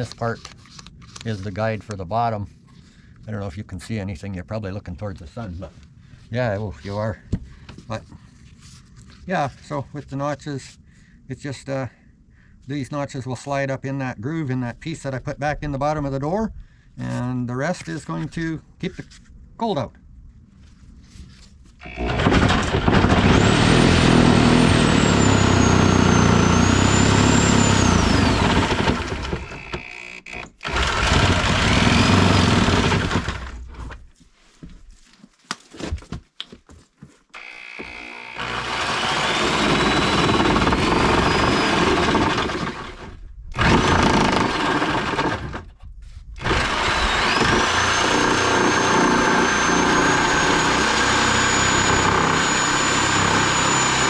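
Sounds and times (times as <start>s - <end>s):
angle grinder cutting steel: 21.8s - 33.5s, 37.4s - 45.6s, 46.4s - 54.0s.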